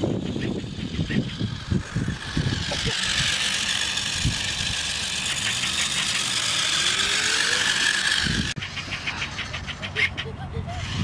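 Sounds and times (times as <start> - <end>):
toy truck motor and gears whirring: 0.0 - 11.0.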